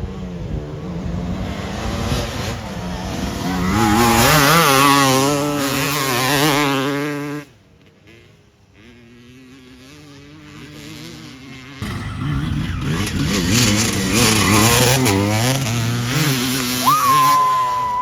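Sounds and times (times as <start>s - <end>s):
dirt bike engine revving: 0.0s - 18.0s
faint engine drone: 6.4s - 18.0s.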